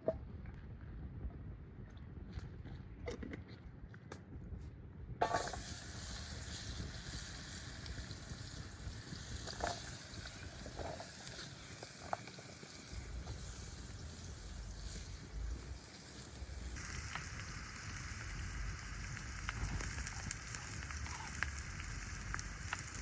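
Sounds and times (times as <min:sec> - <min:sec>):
cooking hiss over campfire: 0:05.2 - 0:23.0.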